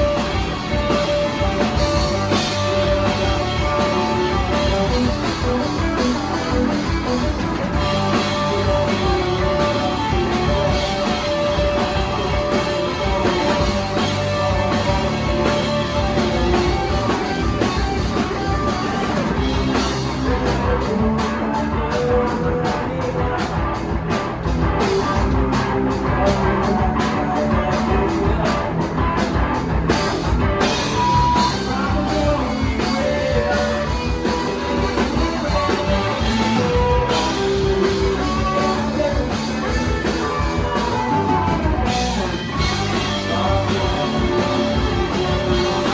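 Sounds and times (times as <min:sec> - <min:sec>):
live rock band playing: 0:00.0 - 0:45.9.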